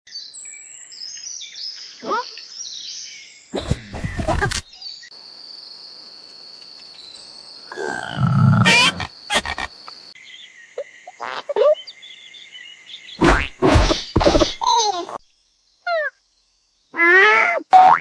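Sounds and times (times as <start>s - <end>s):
high insect-like chirring: 5.4s - 10.2s
loud deep grunt: 7.7s - 9.1s
short squeaky bursts: 8.6s - 9.7s.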